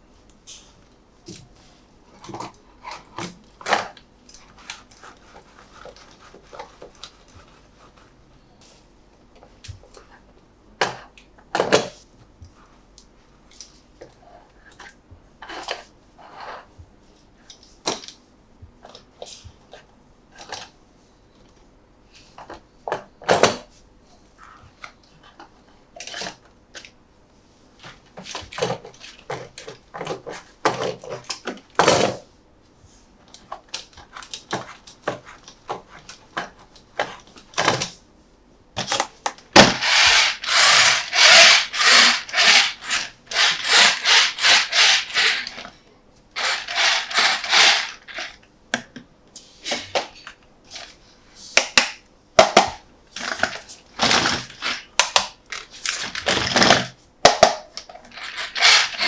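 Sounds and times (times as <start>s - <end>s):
packaging rubbing: 39.6s - 45.6s, 46.4s - 48.4s, 58.1s - 59.0s.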